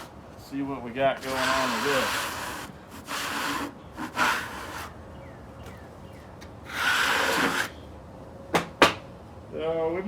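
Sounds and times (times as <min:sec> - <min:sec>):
brush rubbing across sawn wood: 0:01.2 - 0:05.0.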